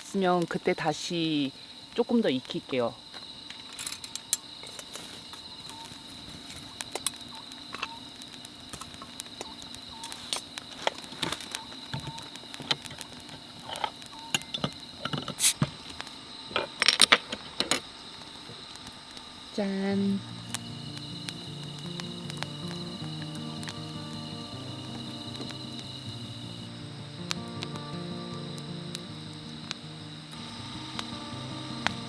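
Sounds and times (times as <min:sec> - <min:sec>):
crickets chirring: 0:00.0 - 0:32.0
small clicks and light knocks: 0:03.1 - 0:15.4.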